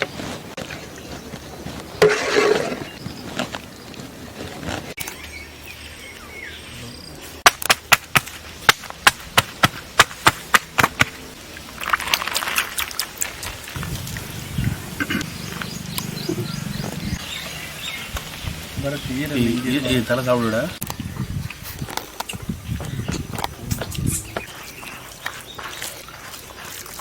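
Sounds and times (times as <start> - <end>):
noisy rustle: 11.1 - 19.6.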